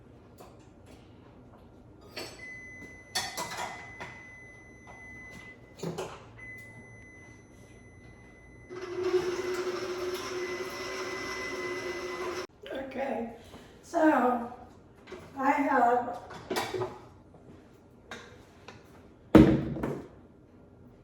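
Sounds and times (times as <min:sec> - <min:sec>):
kitchen clatters and knocks: 0:02.0 - 0:04.4, 0:16.2 - 0:17.1, 0:19.4 - 0:20.2
electric mixer running: 0:08.7 - 0:12.5.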